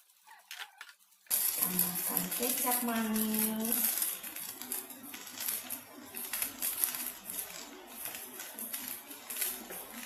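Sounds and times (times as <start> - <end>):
noodles sizzling in a wok: 1.0 - 10.0.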